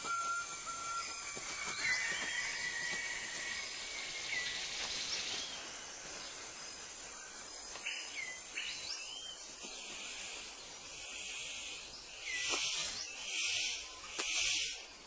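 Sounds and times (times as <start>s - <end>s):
whistled bird calls: 0.0s - 5.5s
high hum of insects: 0.0s - 15.0s.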